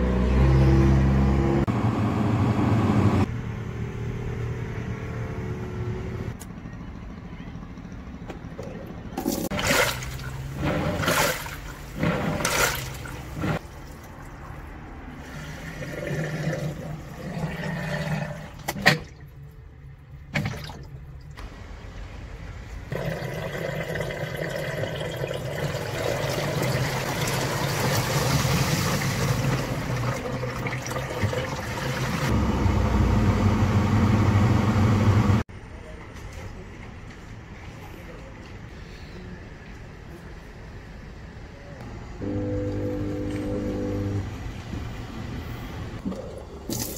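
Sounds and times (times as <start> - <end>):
water running and splashing: 23.6 - 32.3.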